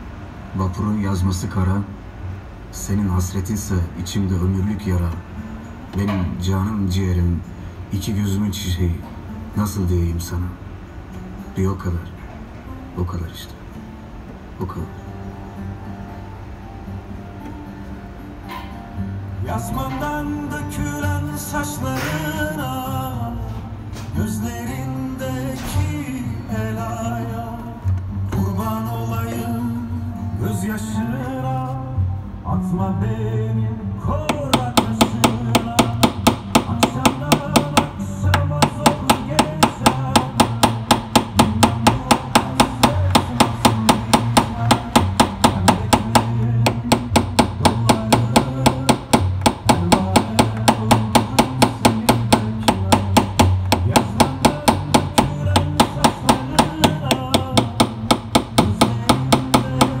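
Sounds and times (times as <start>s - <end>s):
hammer tapping car body panel: 34.3s - 60.0s.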